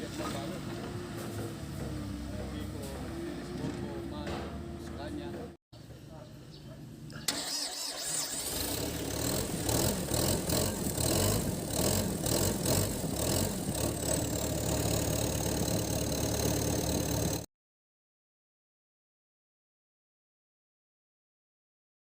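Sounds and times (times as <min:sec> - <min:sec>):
diesel engine idling: 0:07.3 - 0:17.5.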